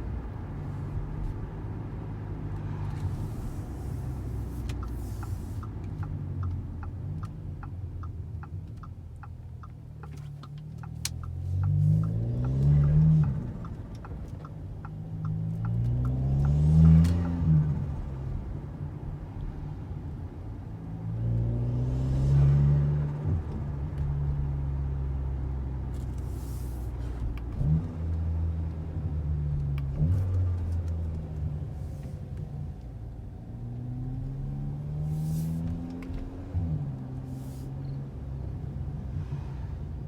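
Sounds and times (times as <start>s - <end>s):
turbocharged car engine revving: 15.3s - 18.2s.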